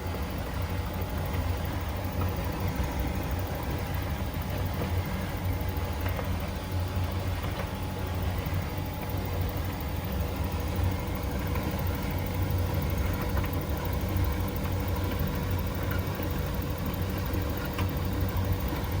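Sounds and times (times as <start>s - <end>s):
clothes dryer humming: 0.0s - 19.0s.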